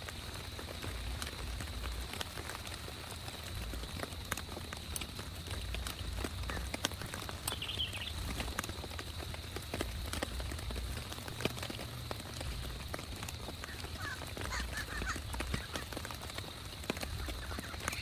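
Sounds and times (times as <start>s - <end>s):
low rumble of wind: 0.0s - 18.0s
raindrops ticking: 0.0s - 18.0s
short chirping calls: 7.5s - 8.3s.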